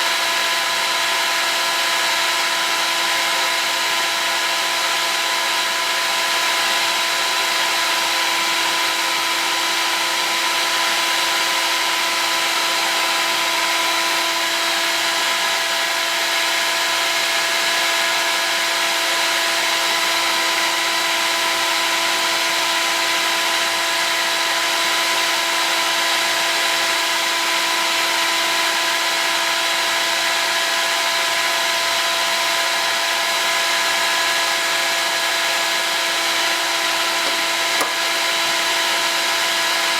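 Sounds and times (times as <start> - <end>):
heat gun blowing hot air: 30.2 - 39.9.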